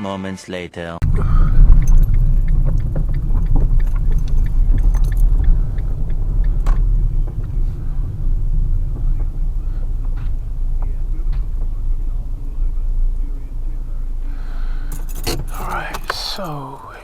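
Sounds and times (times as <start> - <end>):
car interior rumble: 1.0 - 17.0
small clicks and knocks: 1.5 - 12.5.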